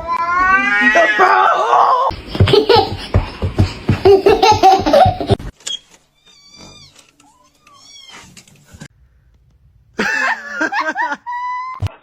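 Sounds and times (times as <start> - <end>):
hearty laughter: 2.2 - 5.4, 10.0 - 12.0.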